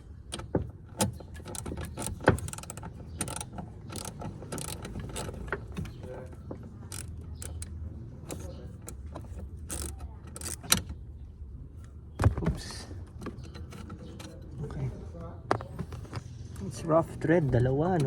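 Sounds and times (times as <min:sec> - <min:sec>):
hand tools clicking and rattling: 0:00.4 - 0:10.9.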